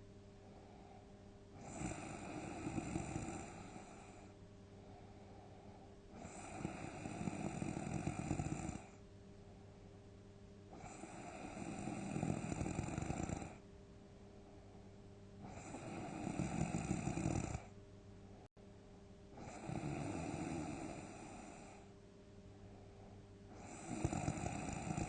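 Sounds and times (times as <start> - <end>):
person snoring heavily: 1.6 - 4.3, 6.1 - 9.0, 10.7 - 13.6, 15.4 - 17.7, 19.4 - 21.9, 23.5 - 25.0.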